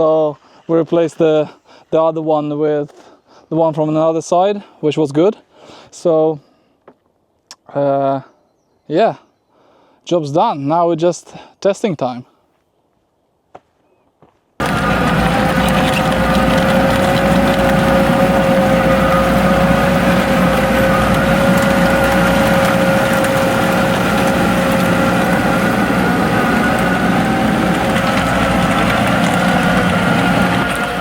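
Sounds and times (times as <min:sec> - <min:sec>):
excavator diesel engine running: 0:14.6 - 0:31.0.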